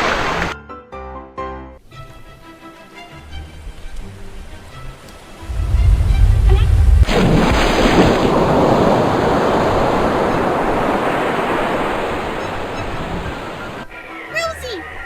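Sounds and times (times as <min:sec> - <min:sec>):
low ocean rumble: 0:05.4 - 0:13.8
wave breaking with surf hiss: 0:05.4 - 0:13.9.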